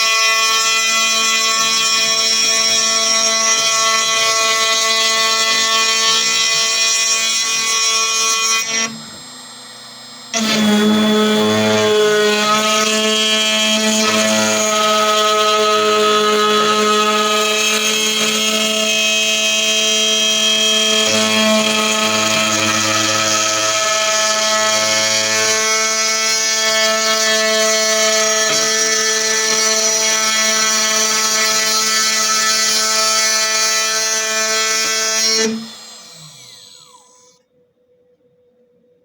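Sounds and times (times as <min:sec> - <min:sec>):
machine motor whine: 0:08.0 - 0:16.4, 0:34.8 - 0:37.4.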